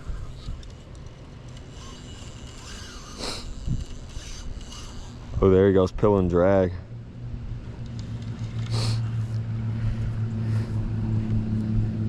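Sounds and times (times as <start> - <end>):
engine running with low hum: 0.0 - 12.0
short hissing burst: 8.7 - 9.0.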